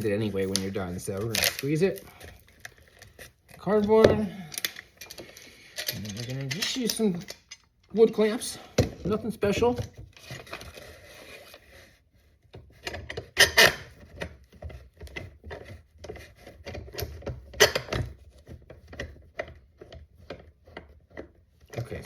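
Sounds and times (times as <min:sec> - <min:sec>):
wood clamps clicking and knocking: 0:03.8 - 0:10.6.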